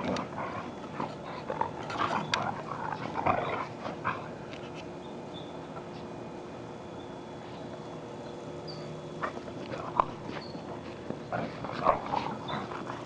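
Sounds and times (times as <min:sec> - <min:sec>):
dogs playing and scuffling: 0:00.0 - 0:06.7, 0:07.3 - 0:13.0.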